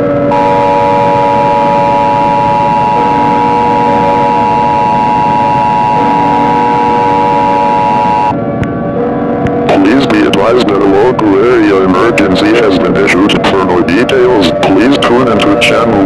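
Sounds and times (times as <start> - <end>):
two-tone alarm: 0.3 - 8.4.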